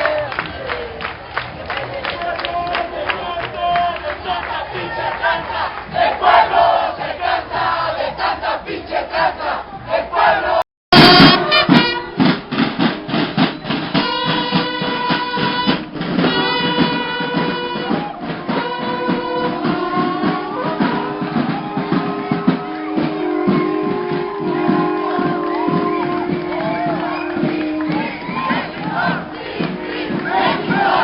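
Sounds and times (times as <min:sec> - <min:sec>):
sustained horn-like notes: 0:10.9 - 0:12.4, 0:14.0 - 0:31.0
steady drumbeat: 0:10.9 - 0:31.0.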